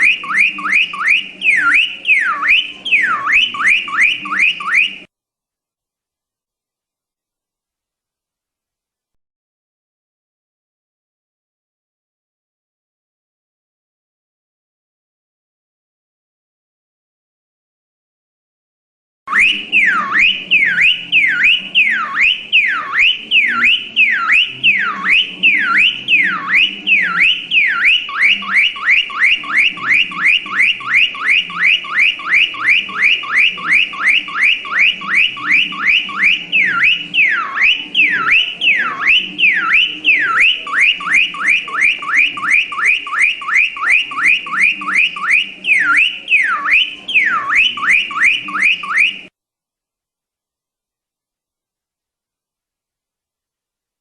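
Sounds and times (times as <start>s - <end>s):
car alarm siren whooping: 0.0s - 5.1s, 19.3s - 49.3s.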